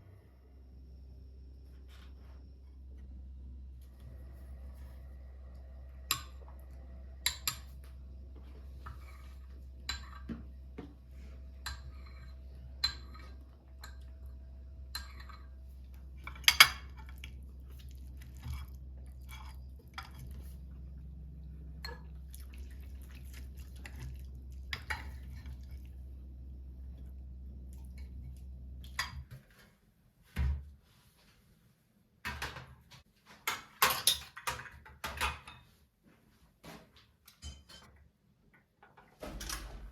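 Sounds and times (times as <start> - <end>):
steady low hum: 0.0 - 29.2
dishes and cutlery clinking: 8.8 - 10.5, 11.6 - 14.2, 14.9 - 15.6, 37.3 - 38.0.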